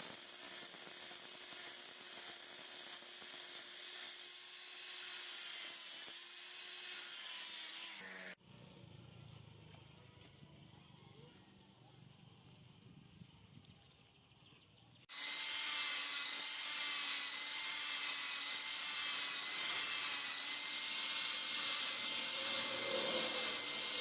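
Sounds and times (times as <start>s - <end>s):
grinding machine motor whine: 15.1s - 24.0s.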